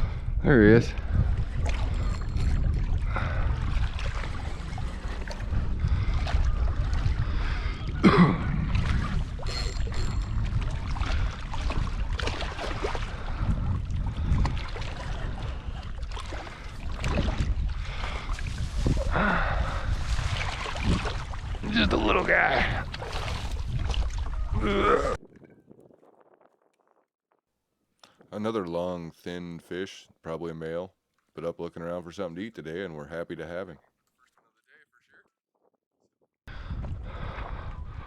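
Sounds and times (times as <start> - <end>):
wind buffeting microphone: 0.0 - 26.4, 36.5 - 38.0
water lapping and splashing: 1.0 - 26.2.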